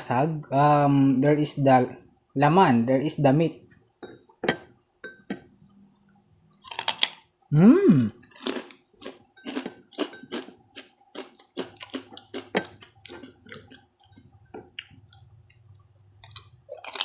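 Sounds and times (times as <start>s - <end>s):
wet chewing and mouth clicks: 8.2s - 17.0s.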